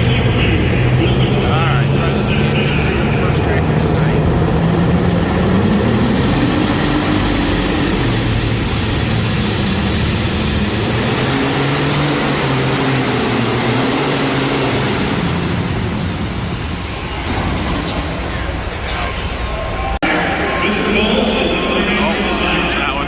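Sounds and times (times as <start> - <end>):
tractor engine running flat out: 0.0 - 18.8
turbocharger whistle: 5.6 - 15.9.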